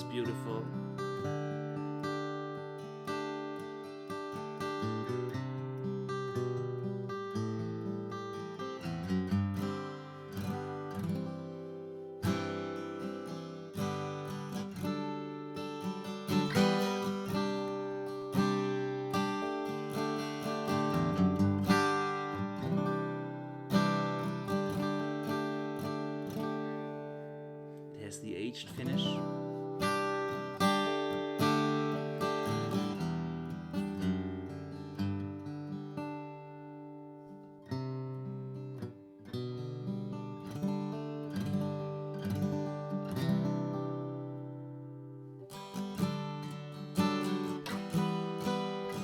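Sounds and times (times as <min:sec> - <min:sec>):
acoustic guitar strummed: 0:00.0 - 0:49.0.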